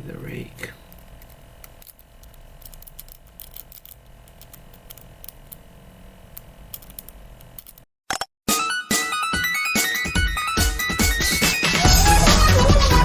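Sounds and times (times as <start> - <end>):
music: 8.5 - 13.0.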